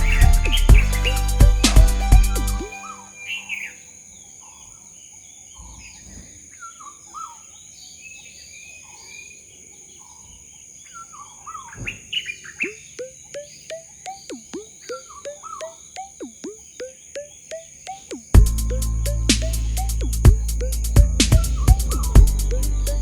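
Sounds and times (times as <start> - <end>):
birds chirping and calling: 0.0 - 3.8, 10.0 - 23.0
short falling chirps: 12.6 - 23.0
high-pitched insect-like drone: 17.9 - 23.0.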